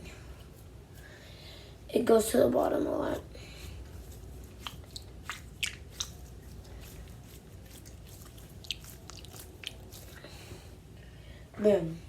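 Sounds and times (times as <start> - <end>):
squishy toy squelching: 3.9 - 10.2.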